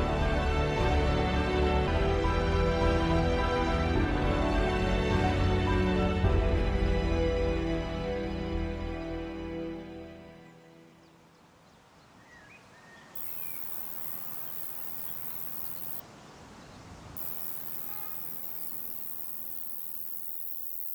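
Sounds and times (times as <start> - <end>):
insect shrill stridulating: 13.2 - 16.0, 17.2 - 20.9
short bird chirps: 13.2 - 16.0, 17.2 - 20.9.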